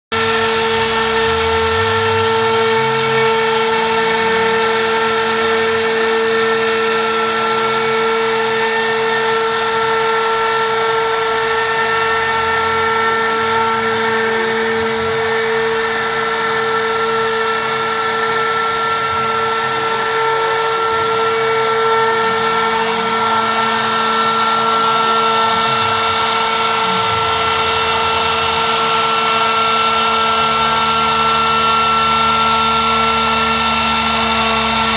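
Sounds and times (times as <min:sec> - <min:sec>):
bit cutting through plywood: 0:00.1 - 0:34.9
router spindle whine: 0:00.1 - 0:34.9.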